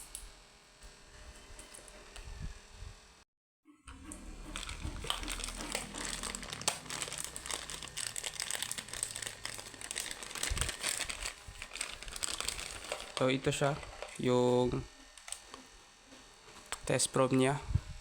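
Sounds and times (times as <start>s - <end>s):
plastic packaging crinkling: 4.4s - 14.3s.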